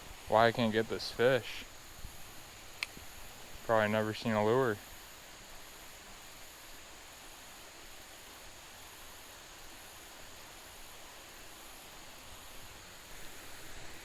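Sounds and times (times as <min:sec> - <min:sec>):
creek hiss: 0:00.0 - 0:14.0.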